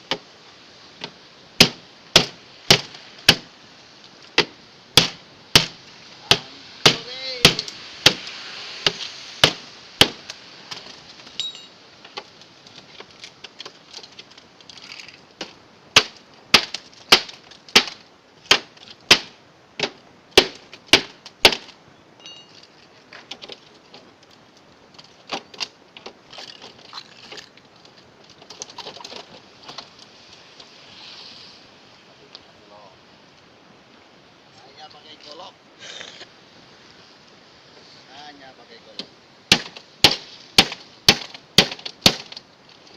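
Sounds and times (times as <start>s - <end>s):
machete chopping metal: 1.6s - 3.5s, 4.4s - 8.2s, 8.8s - 10.2s, 16.0s - 21.7s, 39.5s - 42.4s.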